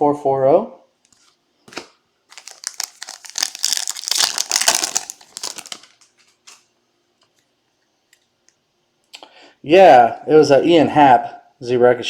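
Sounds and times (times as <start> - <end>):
card pack wrapper crinkling: 1.7 - 6.7.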